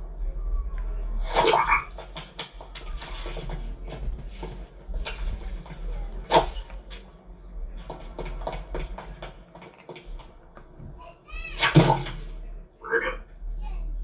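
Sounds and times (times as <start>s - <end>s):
steady low hum: 0.0s - 14.0s
soft rustles: 0.3s - 11.6s
loud knock: 11.4s - 12.3s.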